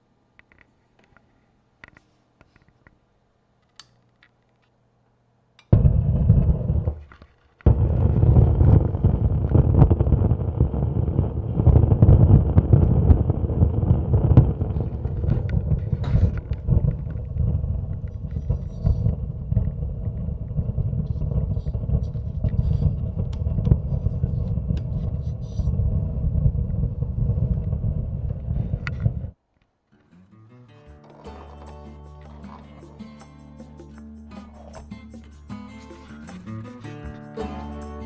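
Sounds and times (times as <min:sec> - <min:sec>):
subwoofer low noise: 0:05.7 - 0:07.1, 0:07.7 - 0:29.4.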